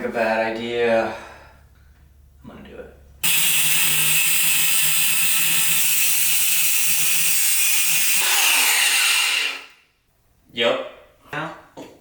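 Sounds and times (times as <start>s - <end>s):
power tool cutting pipe: 3.2s - 9.8s.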